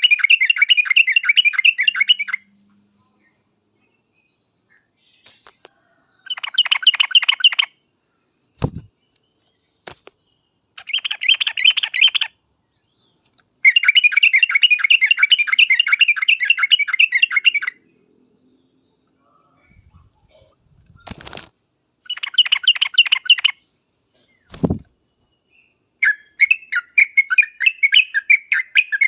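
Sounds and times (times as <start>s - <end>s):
bird chattering calls: 6.3s - 7.7s, 10.8s - 12.3s, 22.1s - 23.6s
short low thump: 8.6s - 8.9s.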